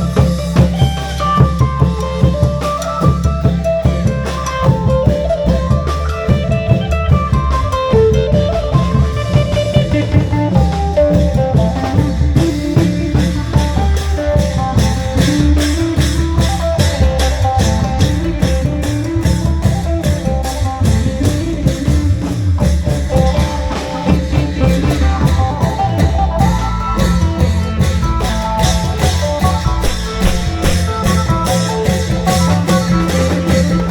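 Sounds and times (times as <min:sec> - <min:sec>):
long drums beating: 0:00.0 - 0:33.9
plucked lute melody: 0:29.8 - 0:32.7.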